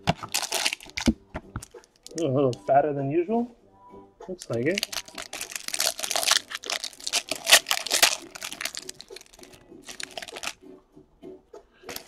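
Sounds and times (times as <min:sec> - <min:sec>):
foil wrapper crinkling and tearing: 0:00.0 - 0:02.2, 0:04.4 - 0:10.6.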